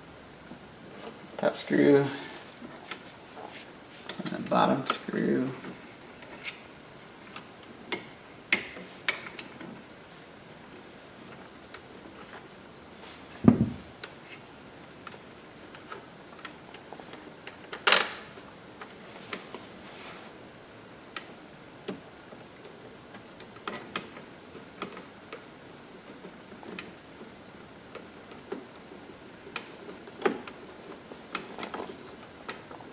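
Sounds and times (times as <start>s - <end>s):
dull thump: 13.4s - 13.9s.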